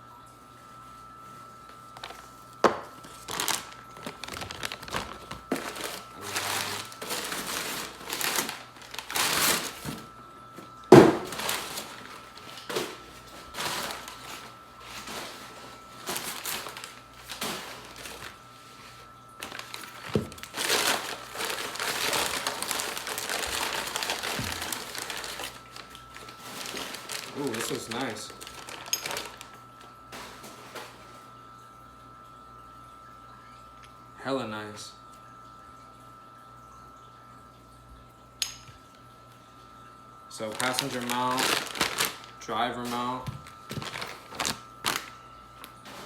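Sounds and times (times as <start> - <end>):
packaging crinkling and rustling: 1.8 - 31.4, 40.3 - 46.0.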